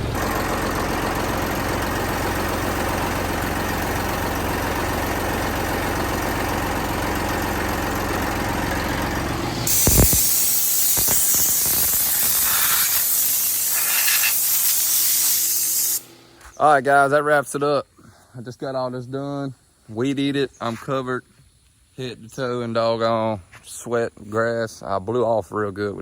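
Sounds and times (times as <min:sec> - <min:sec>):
lawn mower engine running: 0:00.0 - 0:16.6
loud hiss of rushing air: 0:09.6 - 0:16.2.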